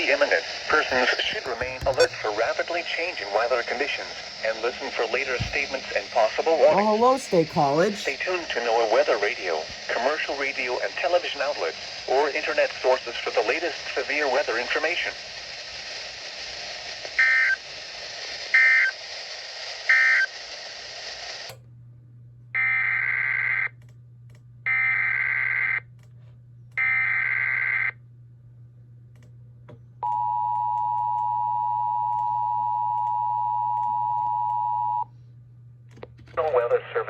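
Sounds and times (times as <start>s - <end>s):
radio hiss: 0.0s - 21.5s
low hum: 28.0s - 36.2s.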